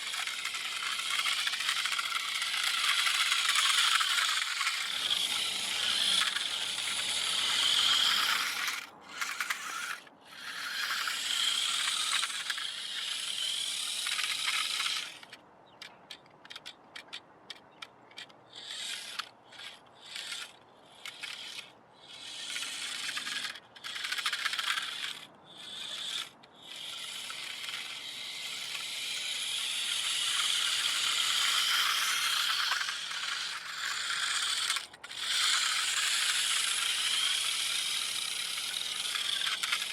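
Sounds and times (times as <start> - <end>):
toy truck electric motor running: 0.0 - 39.9.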